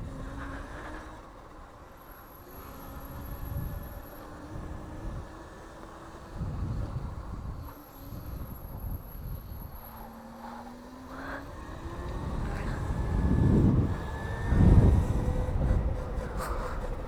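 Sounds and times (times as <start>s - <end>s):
wind rumble on microphone: 2.9s - 5.5s, 6.2s - 9.9s, 11.4s - 17.0s.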